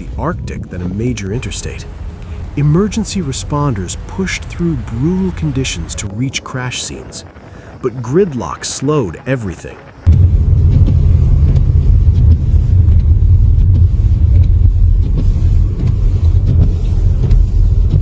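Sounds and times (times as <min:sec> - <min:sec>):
loud low rumble: 0:00.0 - 0:06.1, 0:10.0 - 0:18.0.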